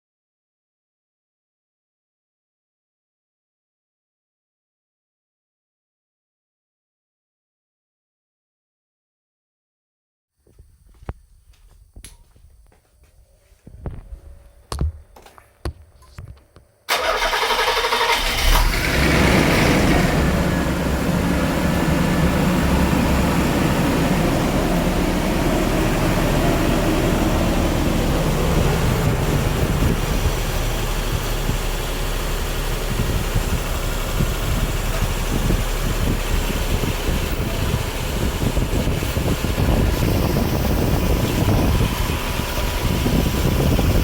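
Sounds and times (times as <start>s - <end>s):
car engine cranking and idling: 16.9s - 44.0s.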